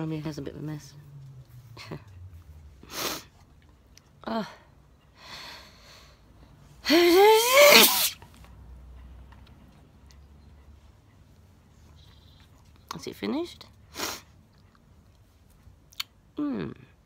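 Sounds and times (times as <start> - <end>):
woman sneezing: 6.8 - 8.2.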